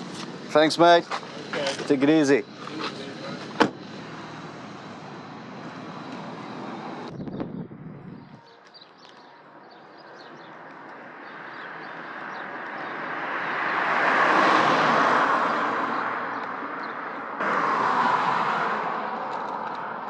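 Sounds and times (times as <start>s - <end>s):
vehicle passing on road: 0.0s - 8.3s, 9.1s - 20.0s
rush of road noise: 0.0s - 20.0s.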